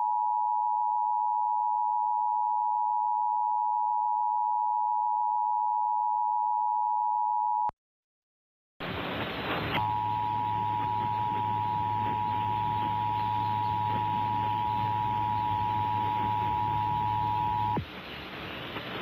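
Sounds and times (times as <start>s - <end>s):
broadcast hum and hiss: 8.8s - 19.0s
two-tone alert signal: 9.8s - 17.8s.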